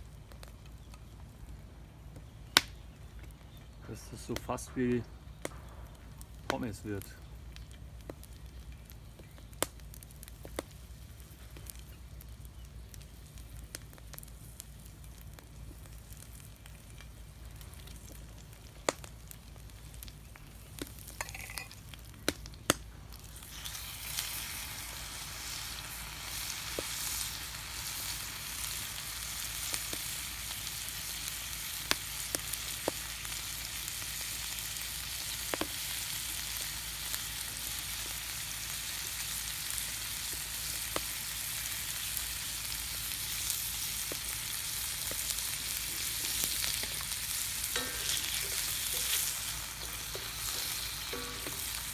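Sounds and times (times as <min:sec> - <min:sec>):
potatoes sizzling in oil: 0:08.6 - 0:51.9
sharp clicks and knocks: 0:49.9 - 0:51.9.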